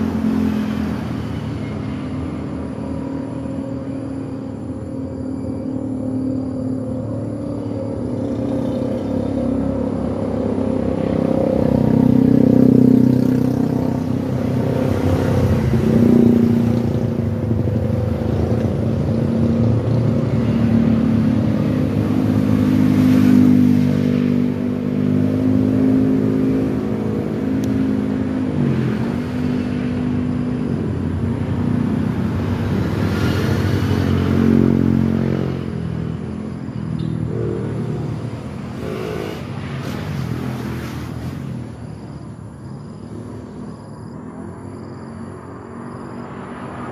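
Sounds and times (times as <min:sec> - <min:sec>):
road noise: 0:00.0 - 0:46.9.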